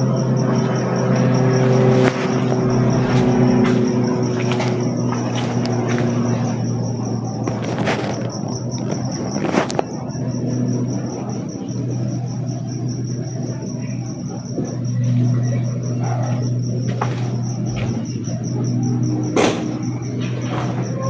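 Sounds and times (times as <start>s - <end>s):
steady low hum: 0.0s - 7.5s
cricket chirping: 0.0s - 21.0s.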